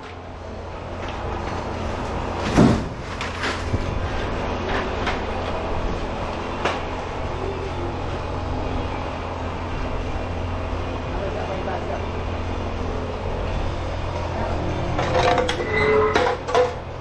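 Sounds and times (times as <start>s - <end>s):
scrap metal clattering: 14.8s - 17.0s.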